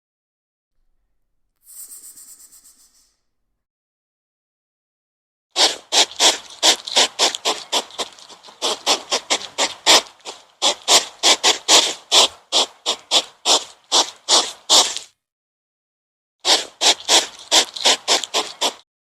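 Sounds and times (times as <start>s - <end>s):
animal making breathy calls: 5.6s - 15.0s, 16.5s - 18.8s.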